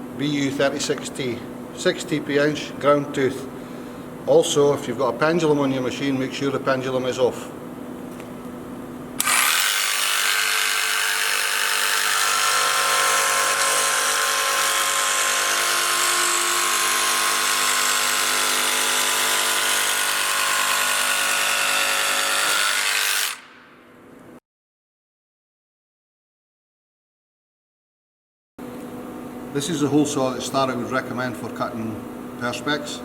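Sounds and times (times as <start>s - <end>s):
jigsaw cutting acrylic sheet: 9.2s - 23.4s.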